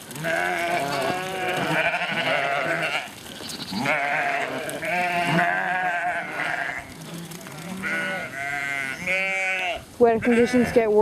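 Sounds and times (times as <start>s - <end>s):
sheep and lambs bleating: 0.0s - 11.0s.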